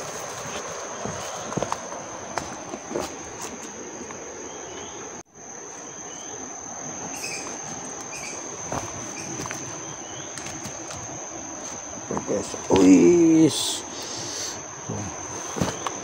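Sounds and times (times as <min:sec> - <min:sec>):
insect trill: 0:00.0 - 0:16.0
faint chirps: 0:04.4 - 0:16.0.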